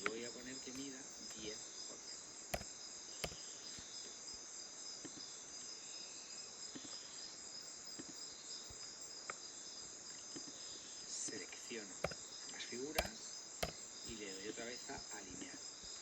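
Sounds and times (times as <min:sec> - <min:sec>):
short sharp clicks: 0:02.6 - 0:03.4, 0:13.0 - 0:13.8.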